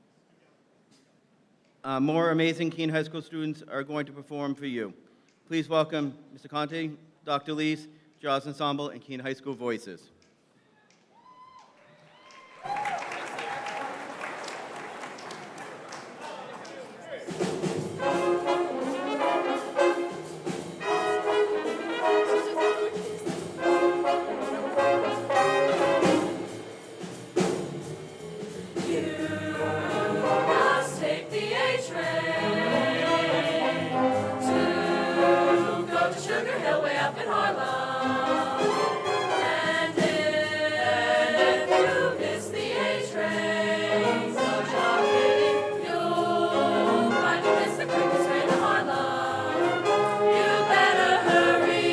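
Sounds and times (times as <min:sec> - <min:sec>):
jazz band with brass: 0:17.3 - 0:51.9
choir singing: 0:18.0 - 0:26.8, 0:28.1 - 0:51.9.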